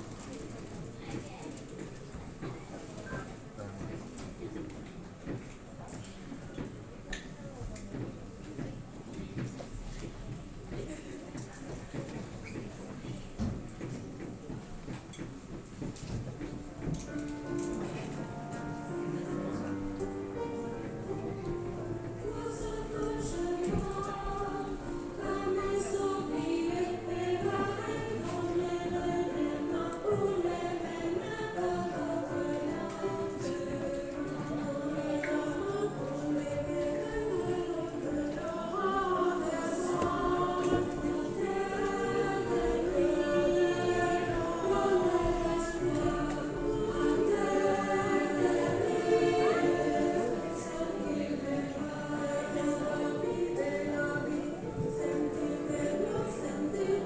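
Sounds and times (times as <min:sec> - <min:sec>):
choir singing in harmony: 0:16.8 - 0:57.0.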